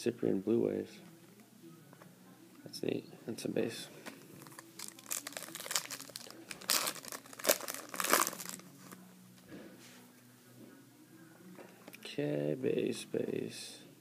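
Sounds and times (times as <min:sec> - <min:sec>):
foil wrapper crinkling and tearing: 0:04.4 - 0:08.6.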